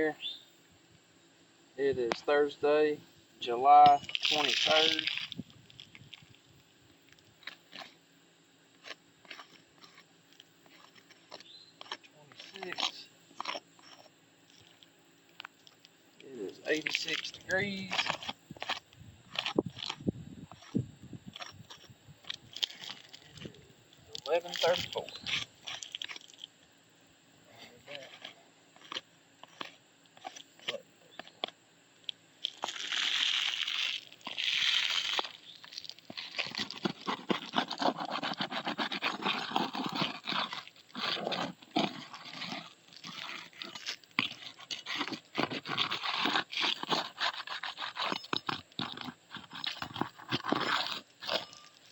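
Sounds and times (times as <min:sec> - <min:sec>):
gritty crunches on roofing shingles: 0:03.9 - 0:08.0, 0:08.7 - 0:15.9, 0:16.6 - 0:26.6, 0:27.9 - 0:51.9
roof shingles cracking: 0:32.4 - 0:48.0.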